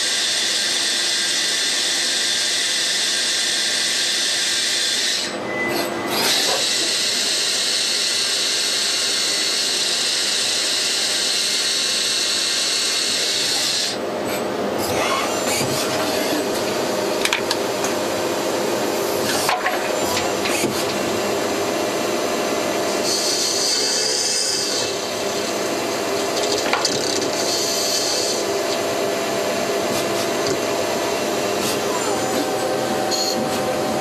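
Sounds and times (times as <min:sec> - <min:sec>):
lathe mechanical whir: 0:00.0 - 0:34.0
metal cutting noise: 0:09.6 - 0:34.0.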